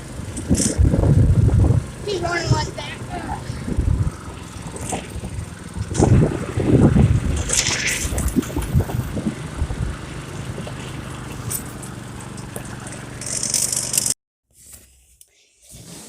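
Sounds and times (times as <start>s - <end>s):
small go-kart engine running: 0.0s - 14.2s
water splashing: 2.8s - 14.0s.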